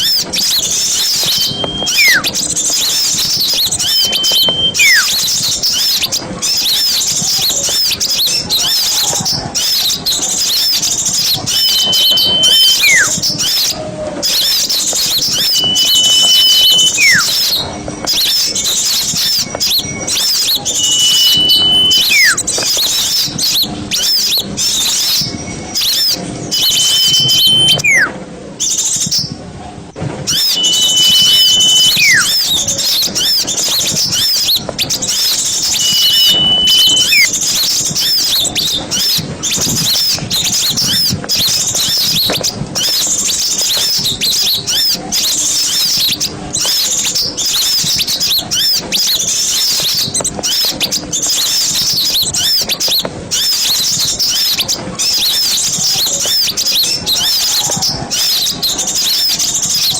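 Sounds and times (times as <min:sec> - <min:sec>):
small birds chirping and twittering: 0:00.0 - 0:29.4, 0:30.0 - 0:59.9
high whistles with falling glide: 0:00.2 - 0:06.1, 0:11.3 - 0:13.2, 0:14.8 - 0:22.6, 0:24.9 - 0:28.1, 0:30.3 - 0:32.6, 0:35.1 - 0:37.4.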